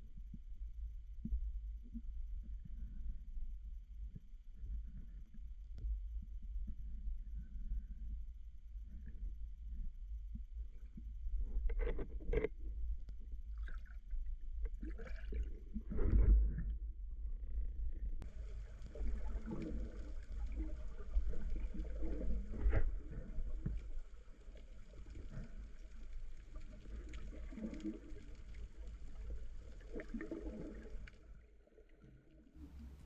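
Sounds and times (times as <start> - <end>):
low underwater rumble: 0.0 - 33.0
underwater water gurgling: 8.8 - 33.0.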